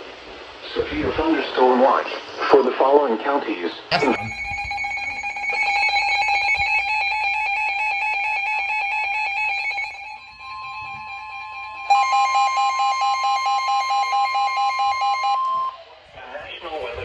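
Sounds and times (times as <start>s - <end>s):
rapidly pulsing beep: 3.9s - 10.2s
stuttering buzzing alarm tone: 3.9s - 10.3s
steady single-pitch alarm tone: 3.9s - 15.9s.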